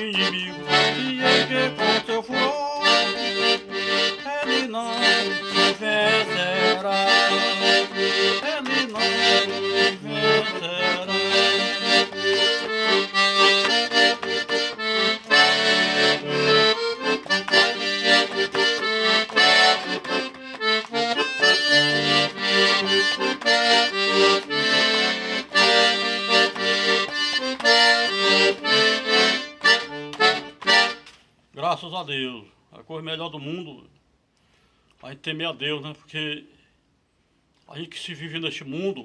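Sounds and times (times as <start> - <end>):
accordion playing hymn tune: 0.0 - 31.2.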